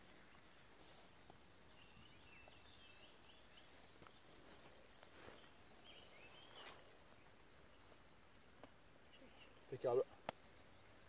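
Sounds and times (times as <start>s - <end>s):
background hiss: 0.0s - 11.0s
faint songbird warbling: 1.6s - 7.9s.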